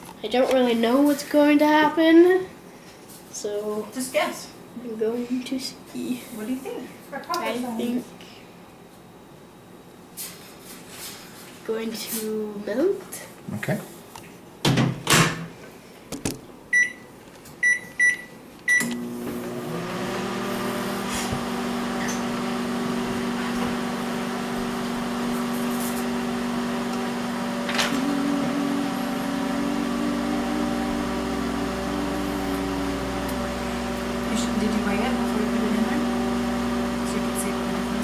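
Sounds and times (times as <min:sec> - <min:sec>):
microwave oven humming: 0:17.6 - 0:38.0.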